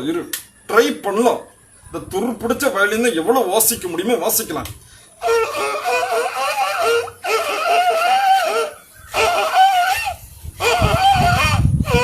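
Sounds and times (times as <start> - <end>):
man imitating screechy violin: 5.2 - 12.0.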